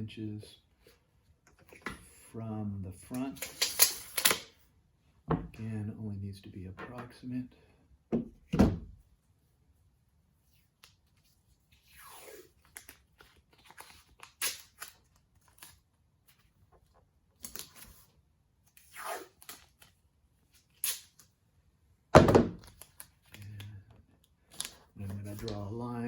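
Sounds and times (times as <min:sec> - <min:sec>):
tape pulled off roll and torn: 0:03.4 - 0:04.5, 0:10.7 - 0:15.9, 0:18.7 - 0:21.4.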